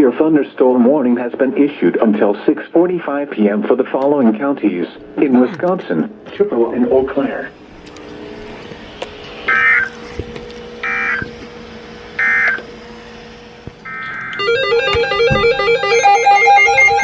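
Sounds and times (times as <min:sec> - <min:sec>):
warbling digital data bursts: 0:09.5 - 0:09.9, 0:13.8 - 0:17.0
plucked guitar-like music loop: 0:14.6 - 0:17.0.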